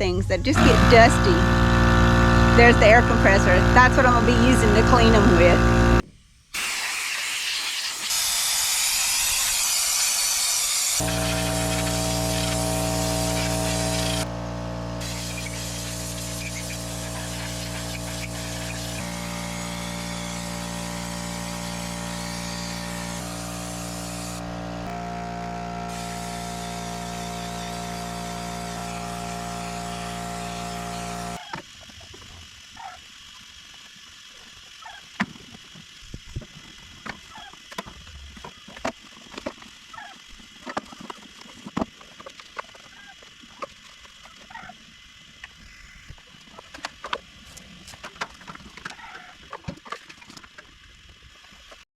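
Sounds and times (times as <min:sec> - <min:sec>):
air compressor running: 0:00.0 - 0:49.3.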